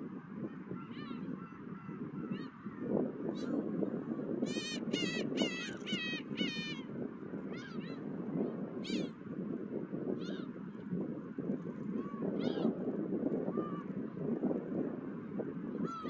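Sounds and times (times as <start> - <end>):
low rush of wind: 0.0 - 16.0
gulls calling: 4.5 - 6.9, 7.5 - 8.1.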